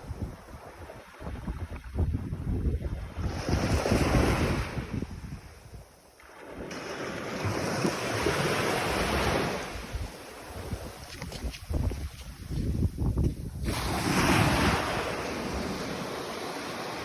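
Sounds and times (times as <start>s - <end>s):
wind buffeting microphone: 0.0s - 5.9s, 7.4s - 17.0s
ocean waves washing onto beach: 6.2s - 12.6s, 13.2s - 17.0s.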